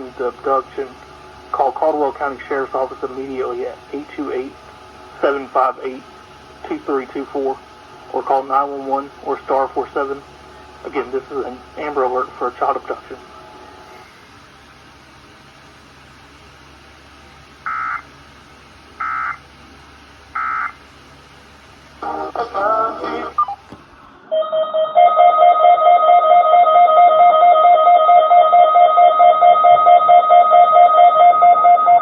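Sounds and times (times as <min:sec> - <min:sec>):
jumbled data burst: 0:17.6 - 0:18.2, 0:19.0 - 0:19.5, 0:20.3 - 0:20.8.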